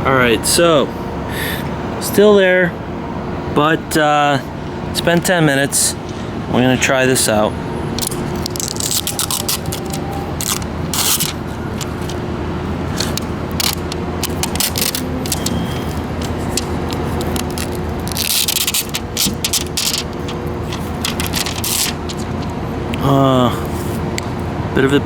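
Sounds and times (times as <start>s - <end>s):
steady low rumble: 7.8s - 23.2s
scraping resin on glass: 8.0s - 12.2s, 12.9s - 22.5s.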